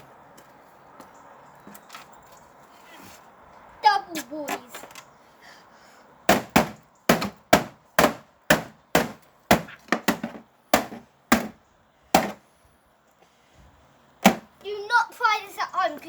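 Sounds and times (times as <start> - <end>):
blows striking a tv set: 6.3 - 12.4, 14.2 - 14.6.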